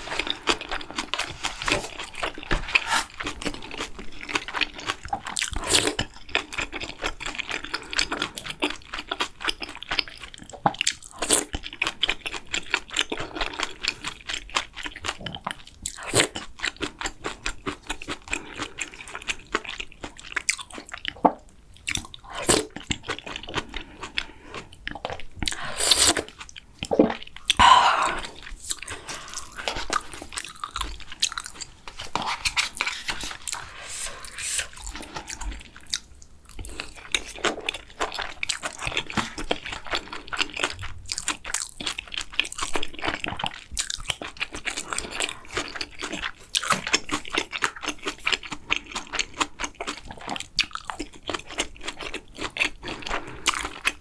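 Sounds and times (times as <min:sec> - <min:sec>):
person chewing crunchy food: 0:00.0 - 0:54.0.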